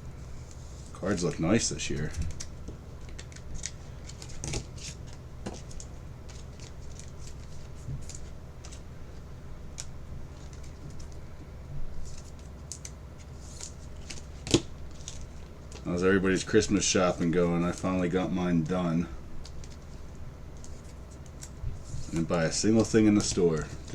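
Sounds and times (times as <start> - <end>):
low steady hum: 0.0 - 23.9
cards clicking and rustling: 0.5 - 8.9, 9.7 - 11.3, 12.0 - 16.4, 19.4 - 23.9.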